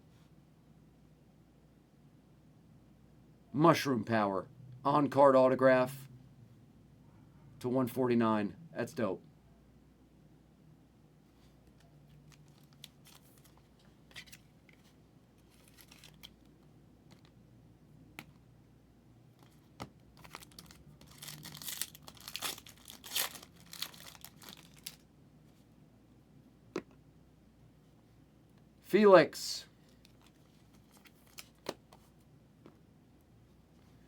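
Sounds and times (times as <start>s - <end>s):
card packaging crinkling and tearing: 12.1s - 14.5s, 15.4s - 16.5s, 20.2s - 25.1s, 30.0s - 31.8s.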